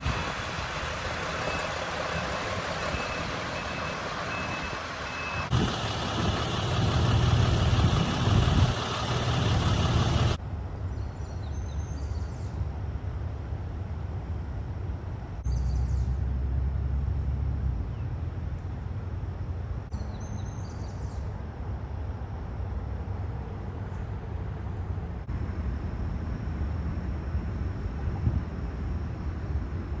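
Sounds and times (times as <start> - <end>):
steady hiss: 0.0 - 10.4
low vehicle engine rumble: 0.0 - 30.0.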